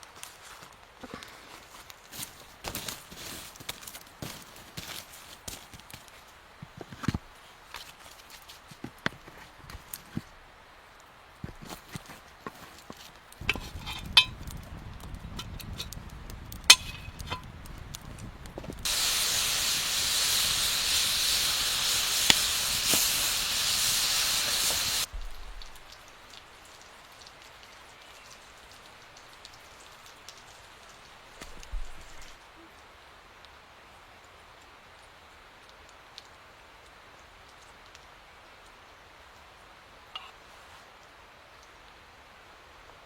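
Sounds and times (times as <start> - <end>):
campfire crackles and knocks: 0.7 - 10.4, 11.4 - 27.8, 29.0 - 32.4
food sizzling in hot fat: 13.4 - 26.6.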